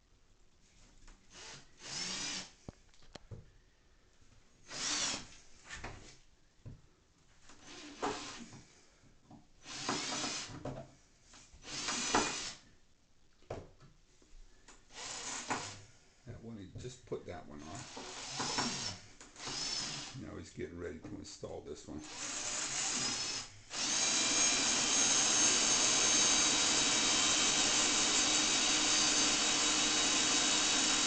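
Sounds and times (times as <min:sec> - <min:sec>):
power drill driving screws: 0:01.3 - 0:02.5, 0:04.7 - 0:05.3, 0:07.6 - 0:08.4, 0:09.6 - 0:10.5, 0:11.6 - 0:12.6, 0:14.9 - 0:15.8, 0:17.6 - 0:20.2, 0:22.0 - 0:31.0.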